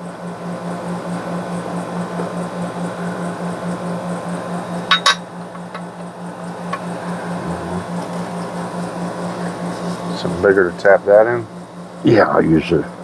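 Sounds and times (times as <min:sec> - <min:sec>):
metal-on-metal taps: 0:04.9 - 0:05.9.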